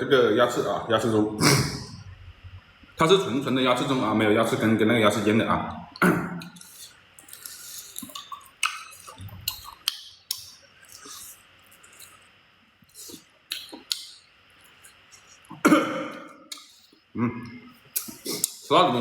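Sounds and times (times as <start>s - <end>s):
wet eating clicks and smacks: 6.4s - 12.2s, 13.0s - 15.5s, 16.5s - 17.0s, 17.9s - 18.7s.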